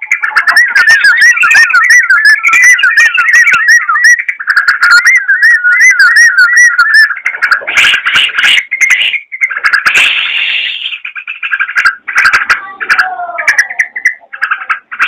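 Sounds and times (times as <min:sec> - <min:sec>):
bird singing whistled notes: 0:00.0 - 0:07.6.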